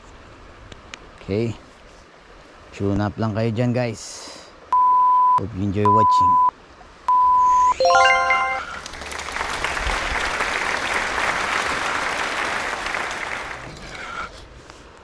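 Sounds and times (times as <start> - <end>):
brief chime: 7.8 - 8.7
applause: 7.8 - 13.9.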